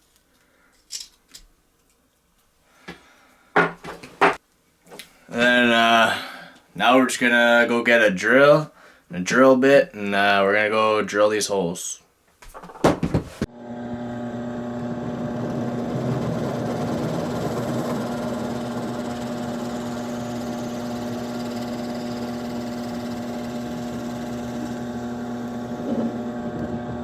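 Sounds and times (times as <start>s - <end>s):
electric drill drilling wood: 13.5s - 27.0s.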